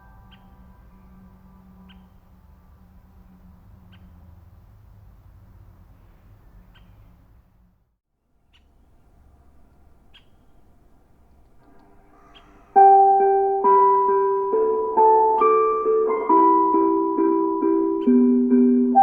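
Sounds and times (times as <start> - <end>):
high bird calls: 0.0 - 1.1, 10.0 - 19.0.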